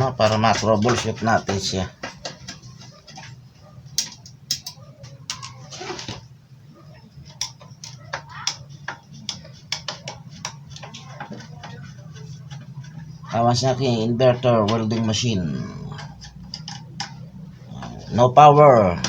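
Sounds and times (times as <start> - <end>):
low steady hum: 0.0 - 19.0
screwdriver clicking on metal casing: 4.0 - 5.6, 7.3 - 11.4.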